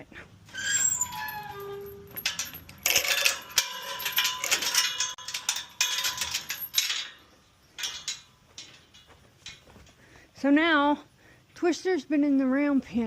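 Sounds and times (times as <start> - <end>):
metal clanking and rattling: 0.5 - 10.0.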